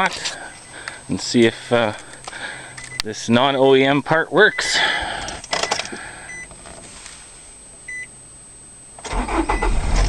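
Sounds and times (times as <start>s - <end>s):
car engine cranking and starting: 9.0s - 10.0s.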